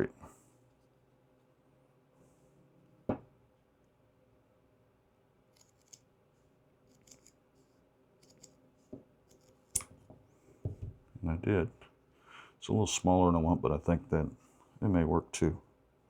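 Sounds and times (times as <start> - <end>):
knock: 10.6 - 11.0.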